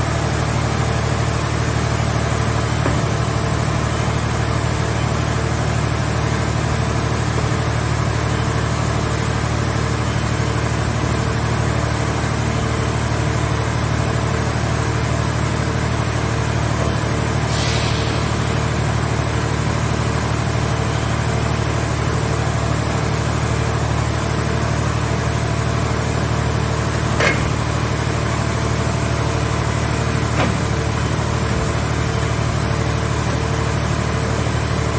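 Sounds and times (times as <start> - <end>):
baler engine running: 0.0 - 34.9
brief hiss: 17.4 - 19.1.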